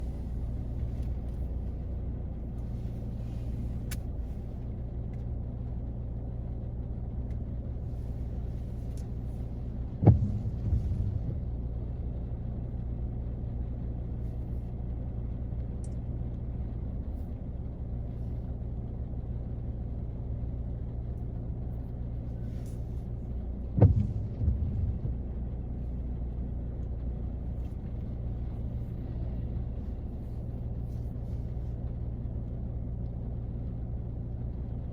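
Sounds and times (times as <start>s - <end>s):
sharp knocks: 10.0s - 11.4s, 23.8s - 25.2s.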